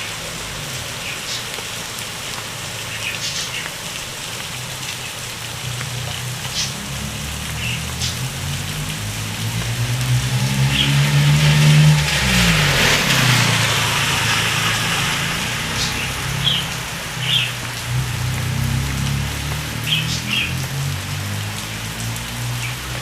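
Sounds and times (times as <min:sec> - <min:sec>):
heavy rain falling: 0:00.0 - 0:23.0
car driving past: 0:05.5 - 0:23.0.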